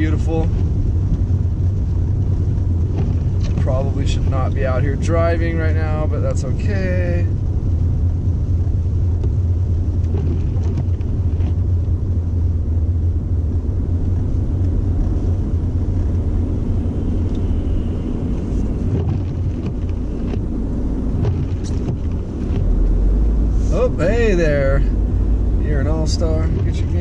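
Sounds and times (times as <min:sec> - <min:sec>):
car engine and tyres rumbling: 0:00.0 - 0:27.0.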